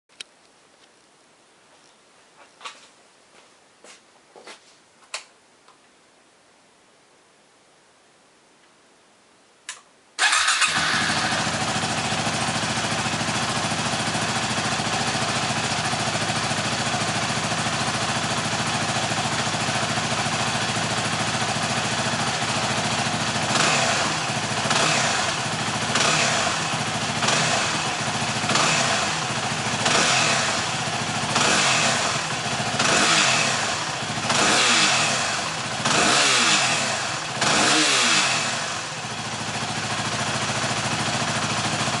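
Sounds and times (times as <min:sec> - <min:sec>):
click: 0:09.6 - 0:09.9
motorcycle engine starting and idling: 0:10.2 - 0:42.0
engine revving in throttle blips: 0:23.5 - 0:39.0.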